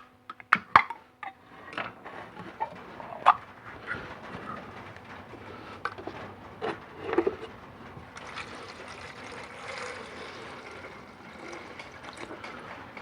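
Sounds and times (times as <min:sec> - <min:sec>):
can clicking and knocking: 0:08.0 - 0:13.0
liquid streaming into a mug: 0:08.0 - 0:13.0.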